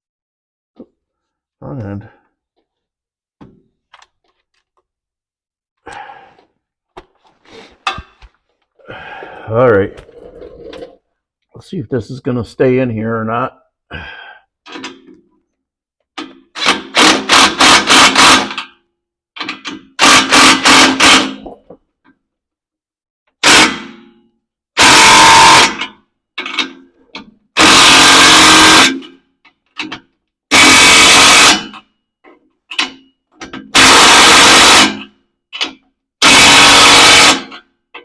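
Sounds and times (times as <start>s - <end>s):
handheld power tool bursts: 16.2s - 18.8s, 19.4s - 21.5s, 23.4s - 24.0s, 24.8s - 26.8s, 27.6s - 29.2s, 29.8s - 31.8s, 32.7s - 37.7s.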